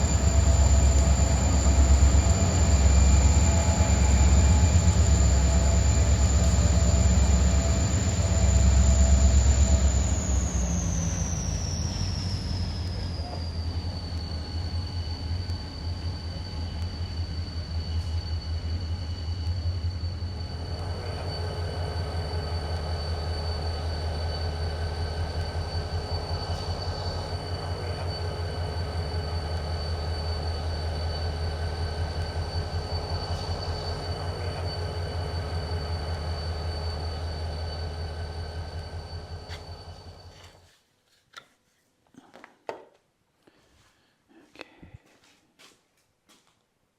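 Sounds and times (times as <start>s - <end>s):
high whine: 0.0s - 40.6s
pulsing diesel engine rumble: 0.0s - 40.6s.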